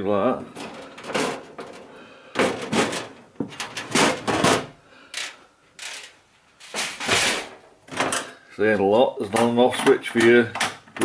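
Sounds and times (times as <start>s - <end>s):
metal and plastic parts knocking: 0.5s - 8.4s.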